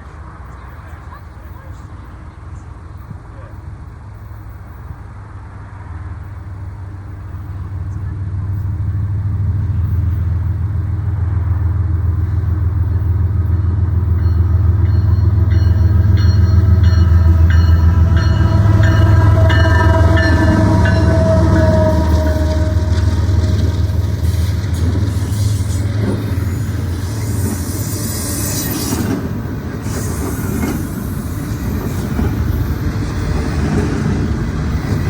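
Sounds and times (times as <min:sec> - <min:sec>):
diesel locomotive engine drone: 0:00.0 - 0:35.0
high-pitched ringing: 0:13.9 - 0:24.3.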